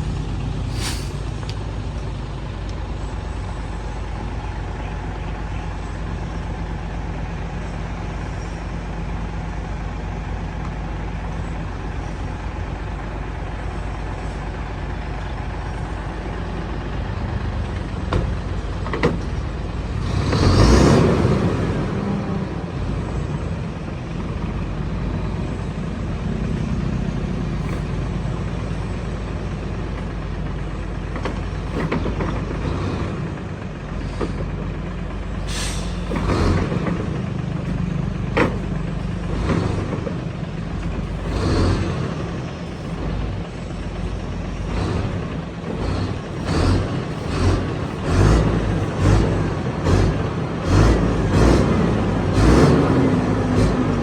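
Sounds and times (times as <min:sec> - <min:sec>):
diesel truck engine running: 0:00.0 - 0:54.0
air hiss bursts: 0:00.7 - 0:01.3, 0:35.5 - 0:36.2.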